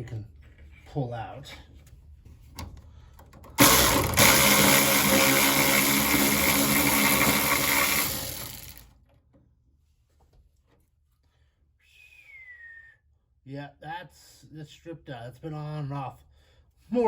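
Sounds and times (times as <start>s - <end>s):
cordless ratchet motor running: 3.6s - 9.0s.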